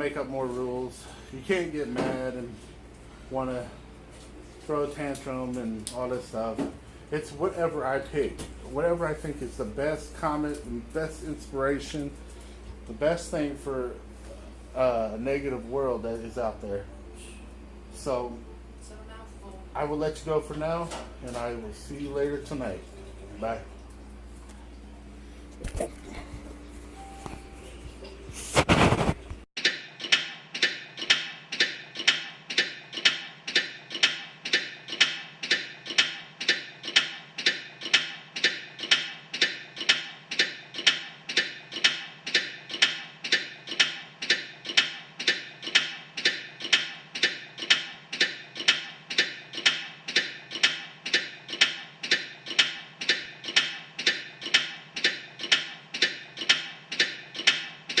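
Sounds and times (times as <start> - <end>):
background music with ticking beat: 29.6 - 58.0.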